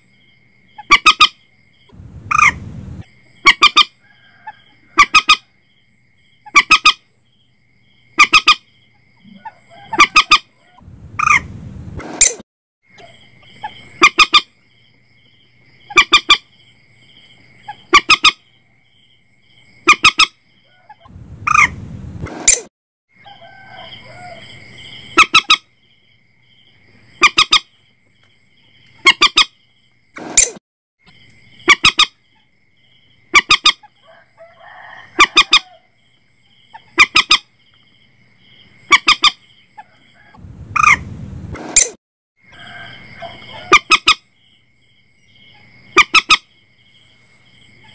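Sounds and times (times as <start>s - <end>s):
moorhen calling: 0.8s - 1.4s, 2.3s - 2.6s, 3.4s - 4.4s, 5.0s - 5.4s, 6.4s - 7.0s, 8.2s - 8.6s, 9.2s - 11.5s, 13.0s - 14.5s, 15.8s - 16.5s, 17.7s - 18.4s, 19.8s - 21.8s, 25.1s - 25.7s, 27.2s - 27.7s, 29.0s - 29.6s, 33.3s - 34.0s, 36.7s - 37.4s, 38.9s - 41.0s, 43.2s - 44.2s.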